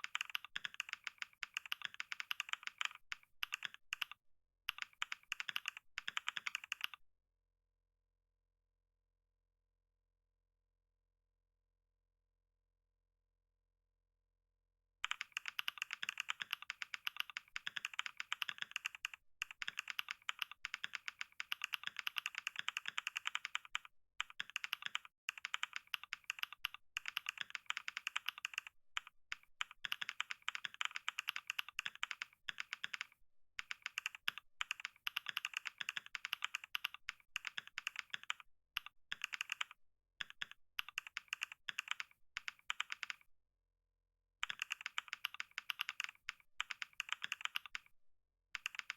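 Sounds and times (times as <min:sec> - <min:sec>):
rapid keyboard typing: 0:00.0 - 0:07.0, 0:15.0 - 0:43.2, 0:44.4 - 0:47.9, 0:48.6 - 0:48.9.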